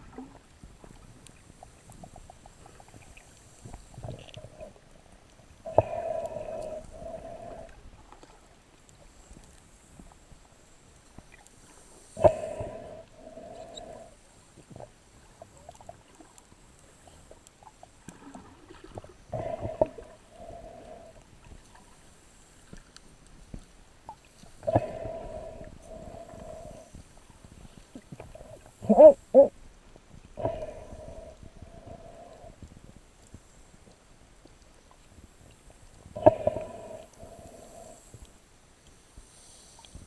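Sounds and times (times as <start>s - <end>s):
muffled snorkel breathing: 5.6s - 10.2s, 11.6s - 16.2s, 18.2s - 23.6s, 24.3s - 29.5s, 30.3s - 33.7s, 35.8s - 38.4s, 39.0s - 40.0s.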